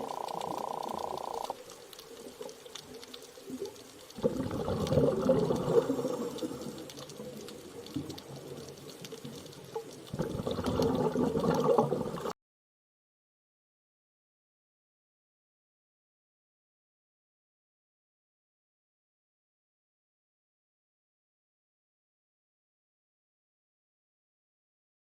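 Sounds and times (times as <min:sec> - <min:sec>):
muffled underwater bubbling: 0:00.0 - 0:12.3.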